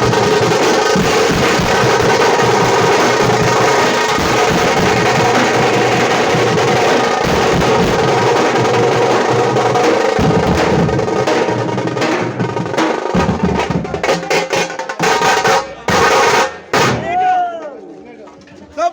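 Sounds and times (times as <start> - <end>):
frame drums beaten with sticks: 0.0 - 17.3.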